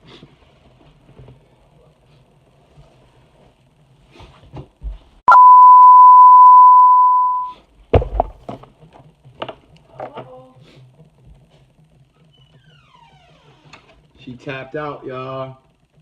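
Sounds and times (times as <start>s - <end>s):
censor bleep tone: 5.3s - 7.5s.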